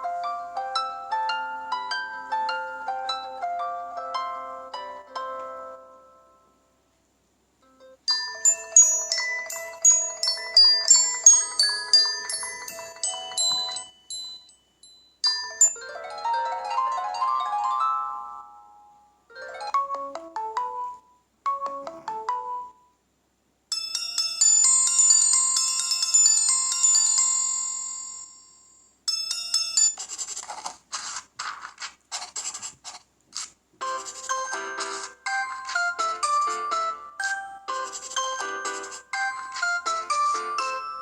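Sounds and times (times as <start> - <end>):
ringtone chime melodies: 0.0 - 6.6, 8.1 - 22.9, 23.7 - 30.2, 33.8 - 41.0
rhythmic percussive ringtone: 8.1 - 16.0, 33.8 - 41.0.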